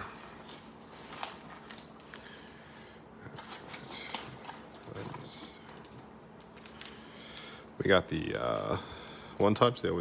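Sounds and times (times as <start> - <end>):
packaging rustling and crinkling: 0.0 - 2.6, 3.3 - 7.5.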